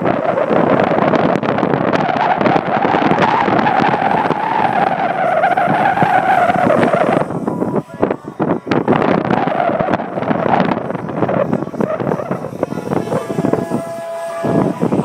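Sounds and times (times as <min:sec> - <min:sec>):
rc helicopter rotor whining: 0:00.0 - 0:15.0
wind buffeting microphone: 0:00.0 - 0:15.0.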